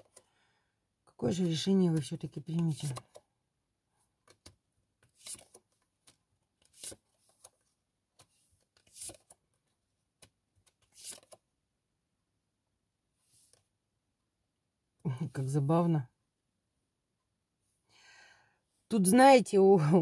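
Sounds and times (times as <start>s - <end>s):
cards shuffling: 1.8s - 3.2s, 4.2s - 11.5s.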